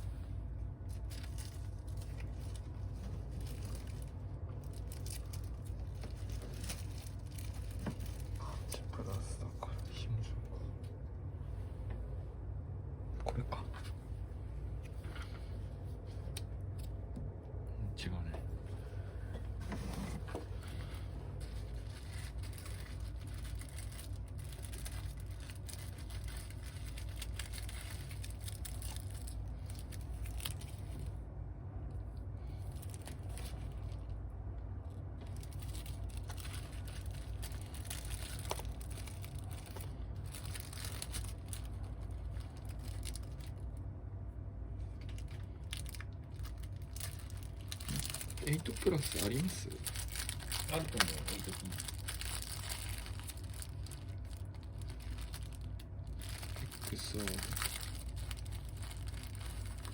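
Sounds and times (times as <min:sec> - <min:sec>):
steady low hum: 0:00.0 - 0:59.9
plastic packets crinkling: 0:00.8 - 0:09.2, 0:19.5 - 0:31.2, 0:32.5 - 0:34.1, 0:35.1 - 0:43.9, 0:45.0 - 0:59.9.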